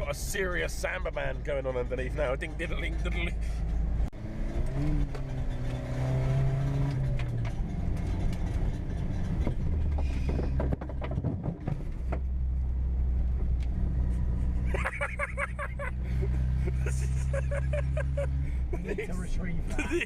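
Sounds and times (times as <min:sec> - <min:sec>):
car engine running: 0:00.0 - 0:20.0
exhaust clattering and scraping: 0:00.0 - 0:20.0.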